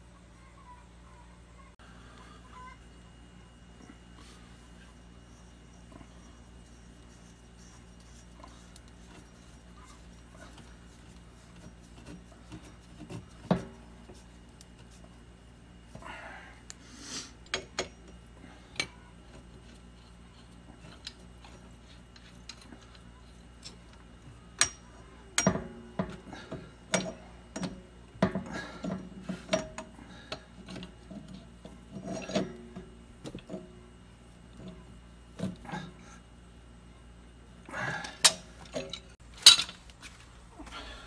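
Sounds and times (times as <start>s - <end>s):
metal tools clinking and scraping: 28.7s - 32.8s, 38.2s - 40.0s.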